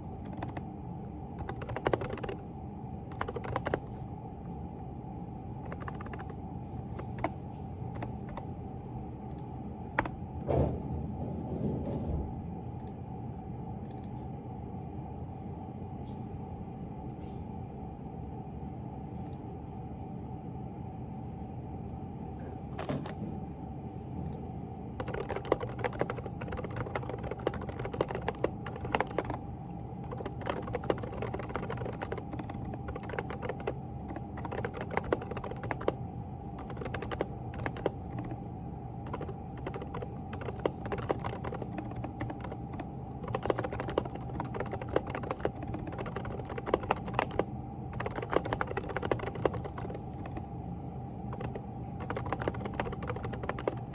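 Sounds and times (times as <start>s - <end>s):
typing on a keyboard: 0.0s - 0.7s, 1.4s - 2.5s, 3.1s - 4.0s, 5.6s - 8.6s, 9.3s - 10.2s, 22.8s - 23.2s, 25.0s - 29.4s, 30.0s - 36.0s, 36.6s - 38.4s, 39.0s - 50.5s, 51.3s - 53.9s
steady hum: 0.0s - 53.9s.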